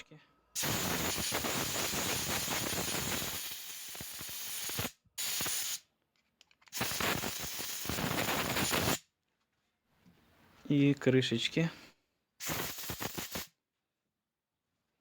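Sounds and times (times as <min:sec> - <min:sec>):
compressed air blasts: 0:00.6 - 0:05.8, 0:06.7 - 0:09.0, 0:12.4 - 0:13.6.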